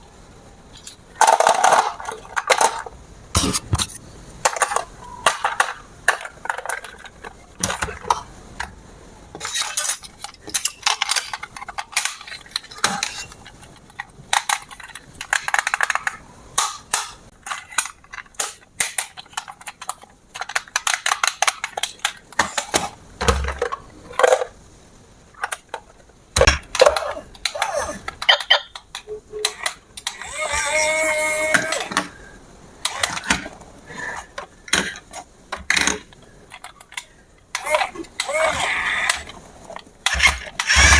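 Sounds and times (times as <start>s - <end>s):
hard plastic clicking and clattering: 0.8s - 24.6s, 32.8s - 33.6s, 34.2s - 40.9s.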